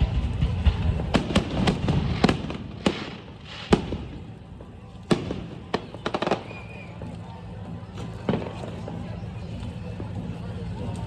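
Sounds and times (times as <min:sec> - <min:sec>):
low rumble: 0:00.0 - 0:05.7
fireworks bangs: 0:00.0 - 0:09.0.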